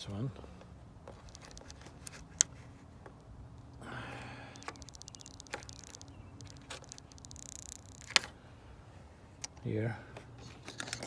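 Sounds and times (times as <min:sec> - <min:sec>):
plastic trim clicking: 0:01.1 - 0:08.3.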